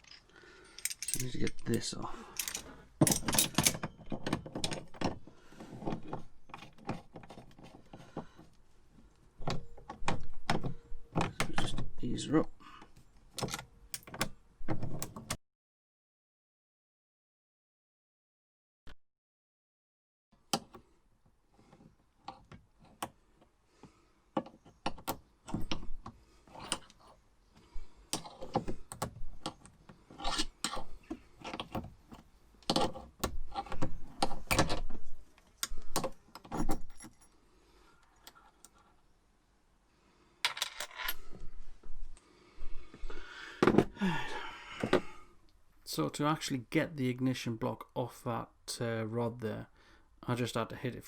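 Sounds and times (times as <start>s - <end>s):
metallic clicks and rattles: 0.0s - 5.1s.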